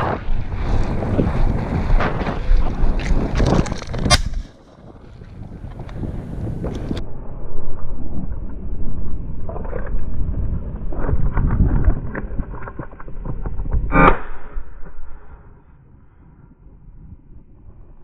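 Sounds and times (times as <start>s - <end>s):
wind rumbling on microphone: 0.0s - 18.0s
clicks and rustles: 2.6s - 4.7s
short sharp sound: 13.9s - 14.8s.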